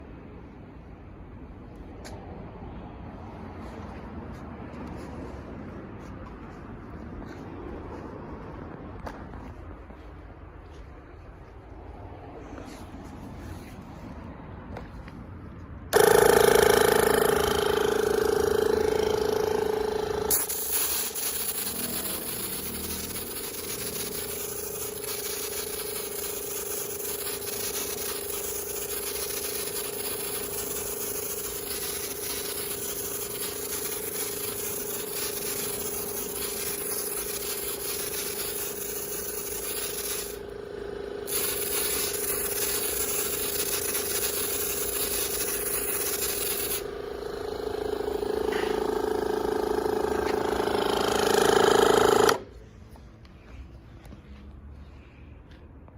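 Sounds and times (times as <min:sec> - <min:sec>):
foam sprayer hissing: 0:16.0 - 0:52.5.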